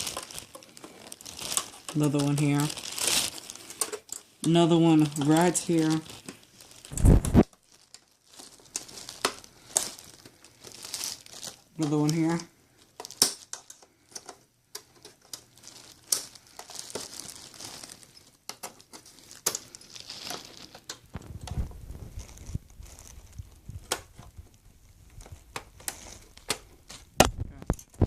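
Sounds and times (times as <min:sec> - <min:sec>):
plastic clips clicking: 0:00.0 - 0:06.4, 0:11.4 - 0:17.4, 0:18.4 - 0:21.7, 0:23.7 - 0:24.4.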